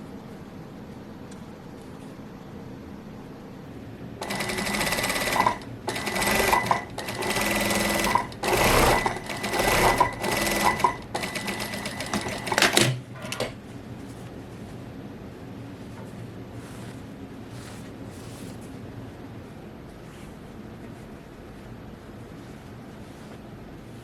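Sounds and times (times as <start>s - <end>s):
sewing machine stitching: 4.2s - 13.5s.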